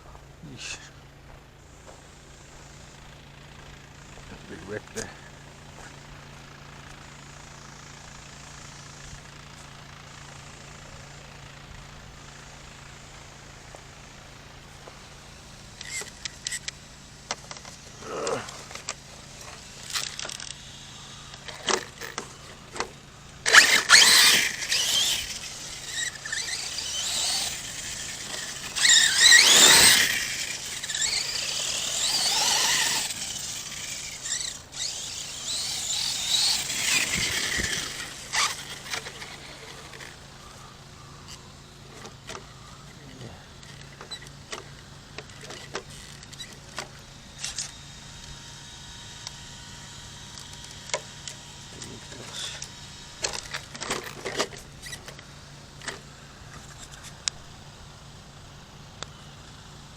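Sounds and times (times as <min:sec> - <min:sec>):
electric motor whining: 0:17.5 - 0:56.0
tyres scrabbling on loose ground: 0:21.4 - 0:40.3.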